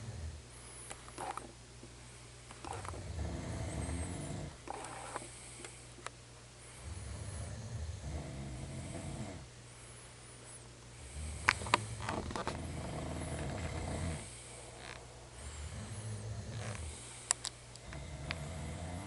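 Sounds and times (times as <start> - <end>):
person snoring: 0.0 - 0.4, 2.6 - 5.3, 6.8 - 9.5, 11.0 - 17.2, 17.8 - 19.0.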